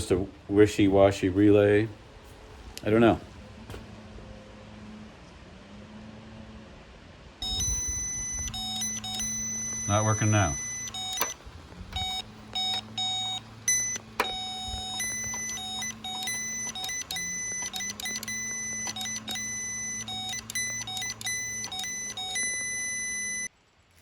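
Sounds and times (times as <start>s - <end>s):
low steady hum: 0.0s - 23.5s
circuit tester beeping: 7.4s - 23.5s.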